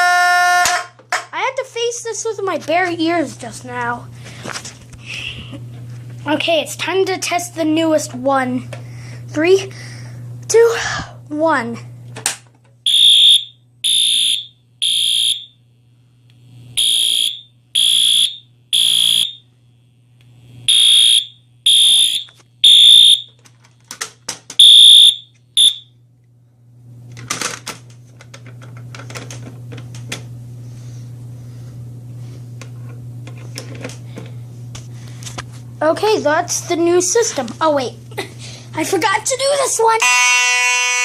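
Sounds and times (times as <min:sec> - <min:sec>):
steady low hum: 0:00.0 - 0:41.0
fire alarm beeping: 0:12.8 - 0:15.6, 0:16.8 - 0:19.5, 0:20.7 - 0:23.4, 0:24.6 - 0:26.0, 0:40.0 - 0:41.0.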